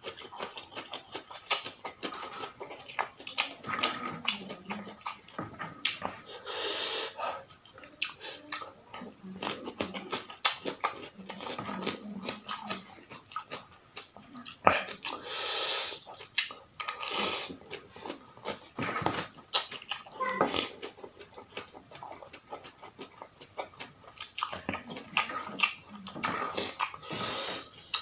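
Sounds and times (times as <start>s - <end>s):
wet chewing: 0.0s - 6.4s, 7.1s - 28.0s
slurping noodle soup: 25.2s - 28.0s.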